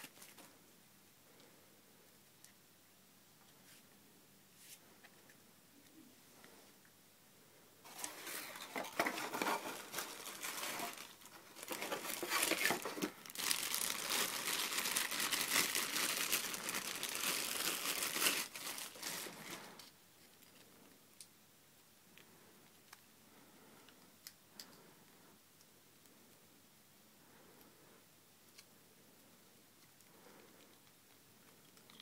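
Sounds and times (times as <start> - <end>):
packaging crinkling and rustling: 7.9 - 20.6.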